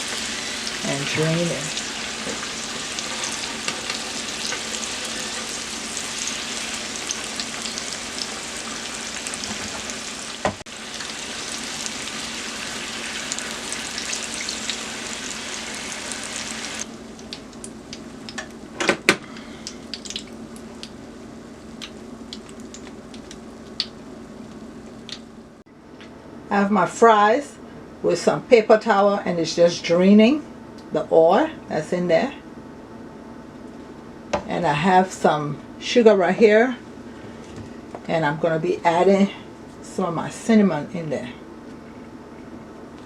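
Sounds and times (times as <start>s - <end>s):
fries sizzling in oil: 0.0s - 18.4s.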